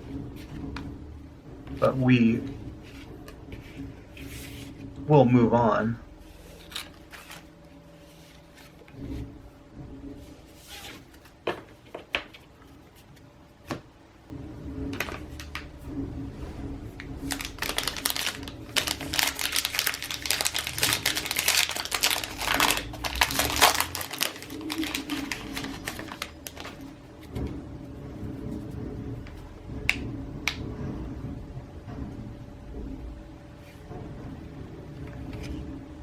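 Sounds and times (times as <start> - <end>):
plastic wrapper crinkling: 17.2 - 26.9.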